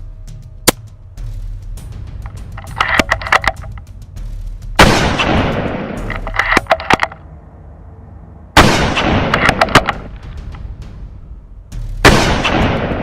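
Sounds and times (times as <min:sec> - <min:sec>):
sharp clicks: 0:02.2 - 0:03.9
loud rifle shots: 0:04.8 - 0:07.0, 0:08.6 - 0:10.1, 0:12.0 - 0:13.0.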